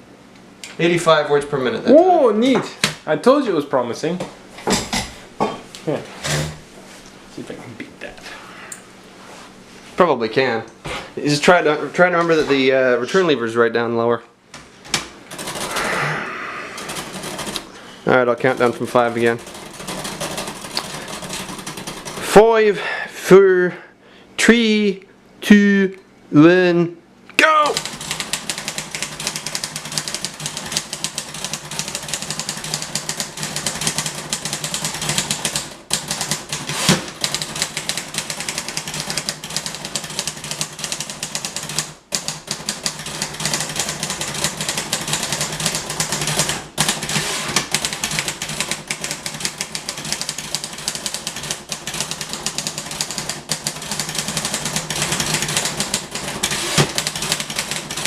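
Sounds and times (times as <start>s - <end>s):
manual typewriter keystrokes clattering: 14.9s - 15.9s, 16.8s - 17.7s, 18.4s - 22.3s, 27.6s - 58.0s.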